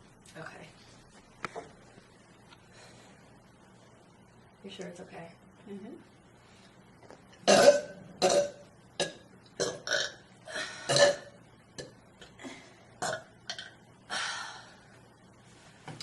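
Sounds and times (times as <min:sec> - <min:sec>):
person burping: 0:07.4 - 0:13.8.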